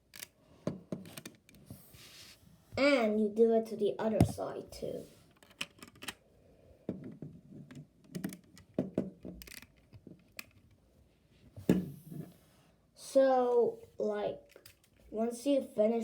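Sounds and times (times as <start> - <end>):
plastic bricks clicking and clattering: 9.3 - 10.6.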